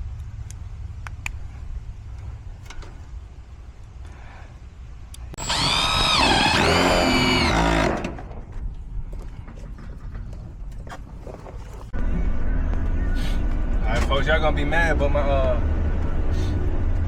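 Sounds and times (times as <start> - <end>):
low rumble: 4.9 - 17.0
power drill running: 5.4 - 8.2.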